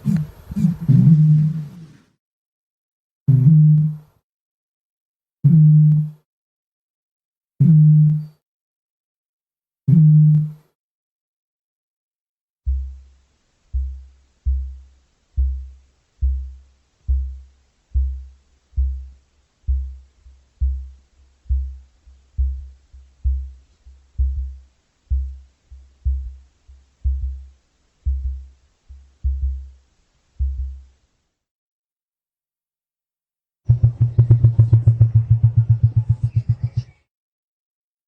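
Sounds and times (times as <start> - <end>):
deep booming creature call: 33.7 - 37.0.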